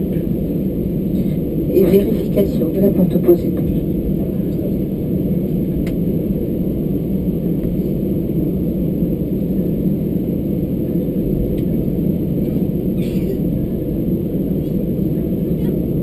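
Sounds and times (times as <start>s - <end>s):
cabin air-conditioning hum: 0.0s - 16.0s.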